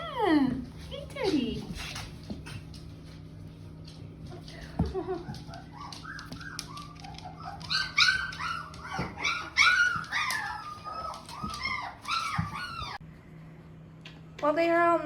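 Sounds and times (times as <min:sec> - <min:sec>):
puppies whining and squealing: 0:04.8 - 0:13.0.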